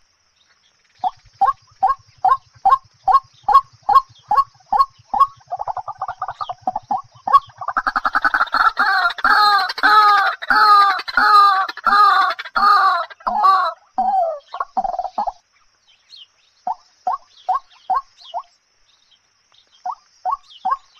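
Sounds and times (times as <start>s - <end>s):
fowl-like bird calling: 1.0s - 15.4s, 19.8s - 20.9s.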